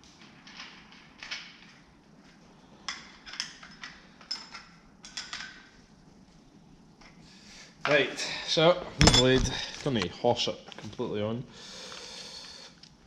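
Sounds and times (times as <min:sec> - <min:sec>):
metal tools clinking: 0:09.0 - 0:09.7.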